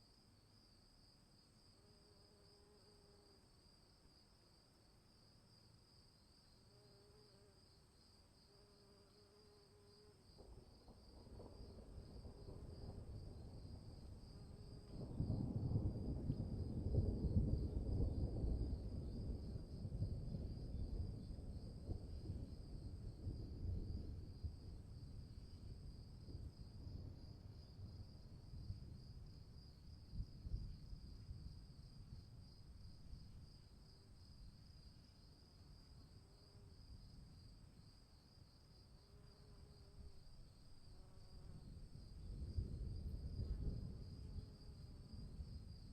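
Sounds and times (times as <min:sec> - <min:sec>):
crickets trilling: 0:01.6 - 0:45.9
thunder rumbling: 0:10.9 - 0:29.0.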